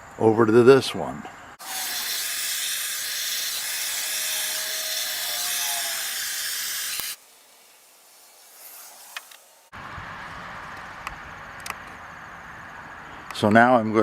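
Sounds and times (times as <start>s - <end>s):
rushing hiss with wavering tone: 1.7s - 9.7s.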